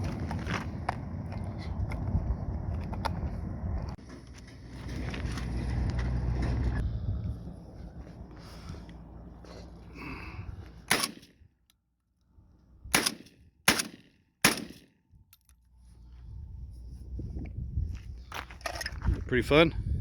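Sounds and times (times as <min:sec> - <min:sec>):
shotgun shots: 0:10.9 - 0:11.3, 0:12.9 - 0:14.9.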